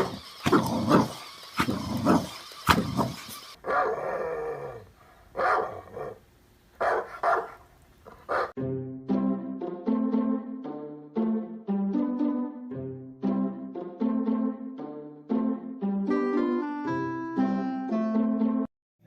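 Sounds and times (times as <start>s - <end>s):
dog barking and growling: 0.0s - 6.2s, 6.8s - 8.6s.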